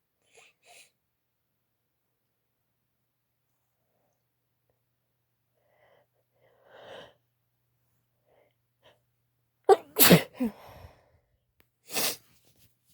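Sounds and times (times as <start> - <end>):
quiet breath: 5.5 - 7.4, 10.5 - 11.4
woman sneezing: 9.7 - 10.6.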